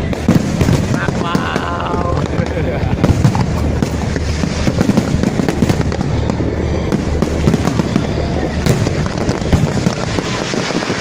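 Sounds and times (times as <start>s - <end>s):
fireworks bangs: 0.0s - 11.0s
fireworks crackling: 0.0s - 11.0s
low rumble: 0.0s - 11.0s.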